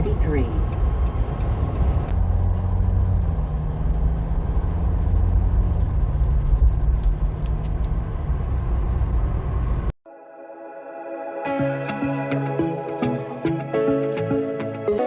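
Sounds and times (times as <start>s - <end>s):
car road rumble: 0.0s - 10.0s.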